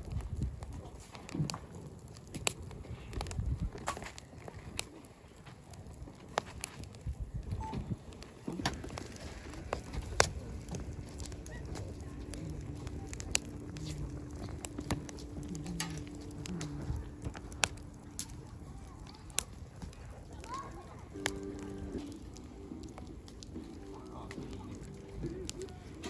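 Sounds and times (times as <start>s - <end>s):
campfire crackling and popping: 0.0s - 26.0s
steady low hum: 7.8s - 20.3s.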